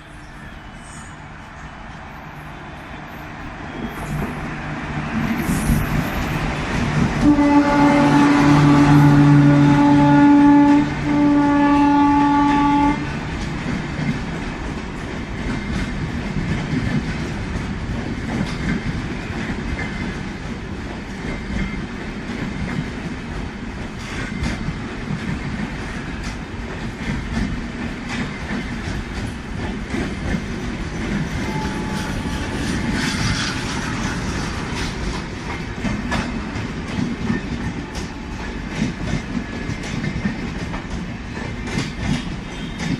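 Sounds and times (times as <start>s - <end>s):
train rumbling past: 0.0s - 42.9s
locomotive horn blasts: 7.2s - 13.1s, 31.4s - 34.5s
wheels clacking over rail joints: 23.8s - 42.9s.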